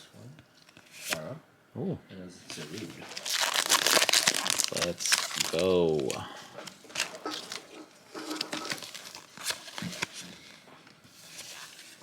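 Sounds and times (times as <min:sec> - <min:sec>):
trading cards being handled: 0:02.5 - 0:12.0
foil wrapper crinkling: 0:02.6 - 0:10.6.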